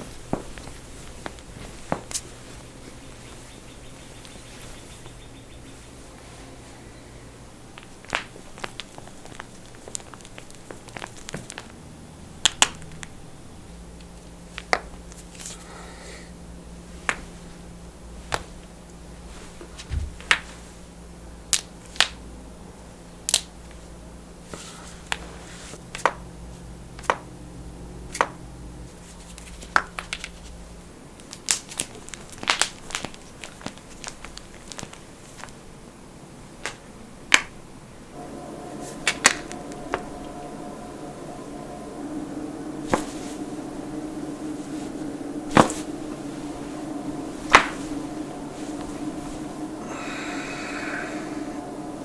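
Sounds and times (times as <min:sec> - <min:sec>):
low steady hum: 0:37.9 - 0:52.0.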